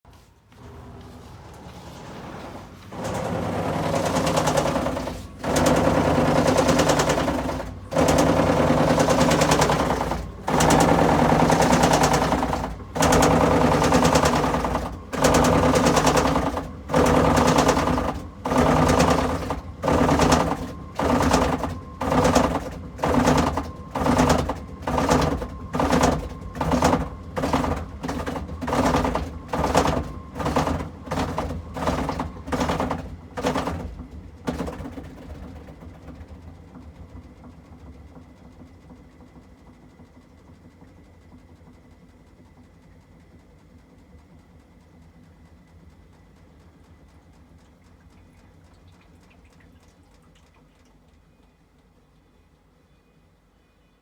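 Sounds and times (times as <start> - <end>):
washing machine rattling clatter: 1.5 - 42.8.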